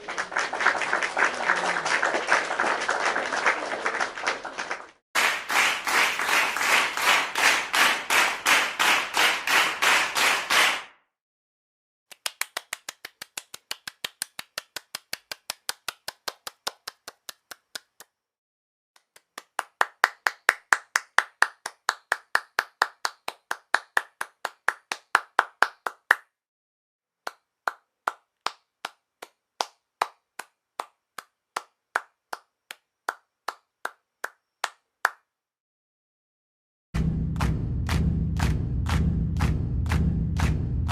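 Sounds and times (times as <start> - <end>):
hand clapping: 0.0 - 10.9, 12.1 - 18.2, 19.0 - 26.3, 27.2 - 35.3.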